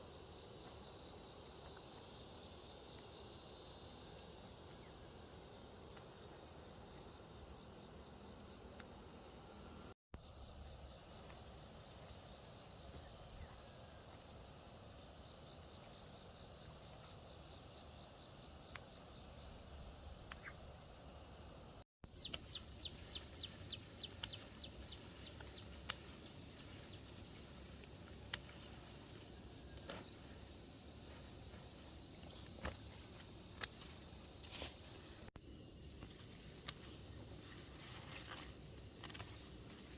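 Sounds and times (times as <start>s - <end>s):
insects trilling: 0.0s - 39.9s
sharp clicks: 22.2s - 22.6s.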